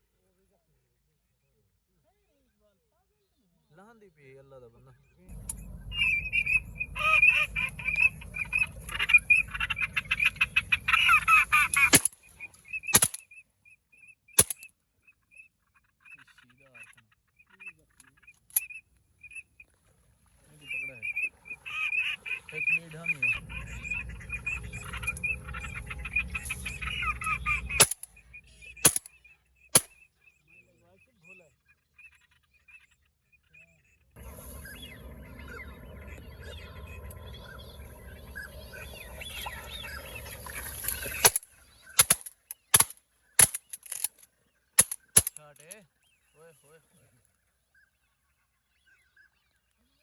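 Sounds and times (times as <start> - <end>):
ducks calling: 5.9 - 13.2, 20.6 - 28.1, 34.4 - 44.1
sharp clicks: 11.8 - 12.2, 12.9 - 13.2, 14.4 - 14.6, 27.8 - 28.1, 28.8 - 29.1, 41.2 - 41.4, 42.0 - 44.2, 44.8 - 45.7
shotgun shots: 11.9 - 12.2, 13.0 - 13.2, 14.4 - 14.6, 27.8 - 28.1, 28.8 - 29.1, 42.0 - 44.1, 44.8 - 45.4.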